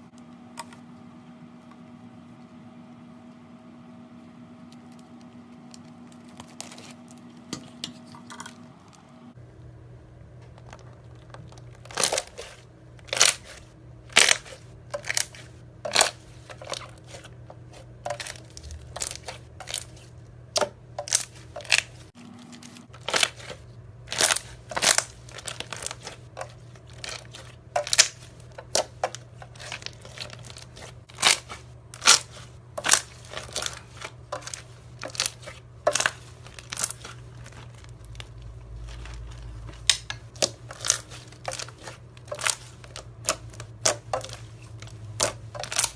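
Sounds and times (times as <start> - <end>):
slime squishing with pops: 10.5 - 22.1, 23.0 - 45.9.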